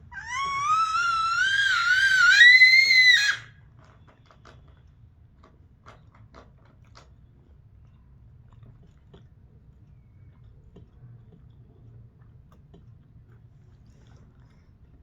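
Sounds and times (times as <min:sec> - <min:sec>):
child screaming high-pitched: 0:00.1 - 0:03.5.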